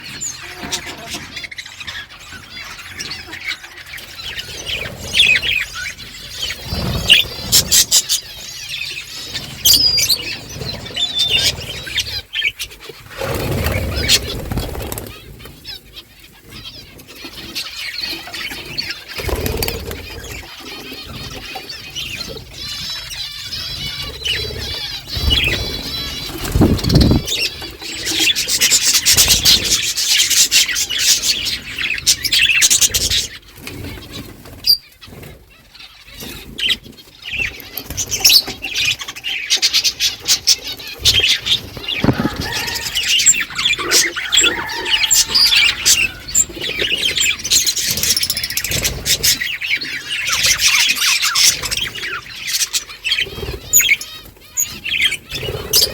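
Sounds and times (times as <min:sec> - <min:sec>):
budgerigars chattering: 0:00.0 - 0:35.0, 0:35.6 - 0:55.9
wings flapping: 0:06.4 - 0:08.2, 0:13.1 - 0:15.4, 0:19.2 - 0:20.1, 0:25.1 - 0:27.6, 0:41.0 - 0:49.5.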